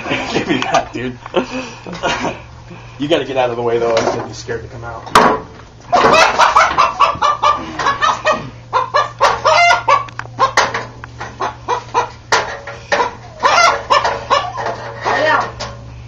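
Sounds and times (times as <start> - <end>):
rooster squawking: 5.9 - 10.6, 13.0 - 15.4.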